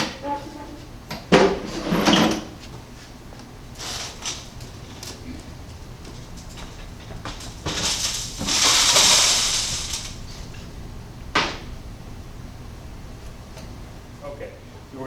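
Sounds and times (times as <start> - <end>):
gravel poured into metal sieves: 7.3 - 10.2.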